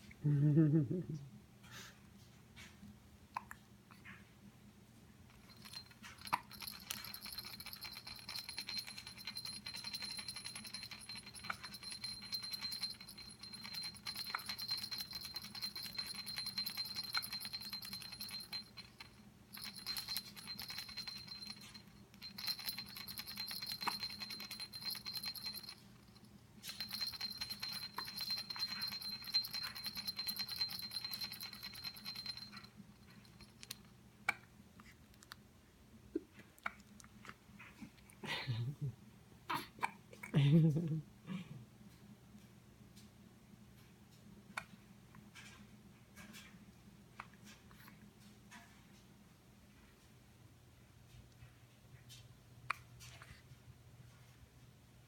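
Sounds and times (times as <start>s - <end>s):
high steady jingling: 5.3s - 33.9s.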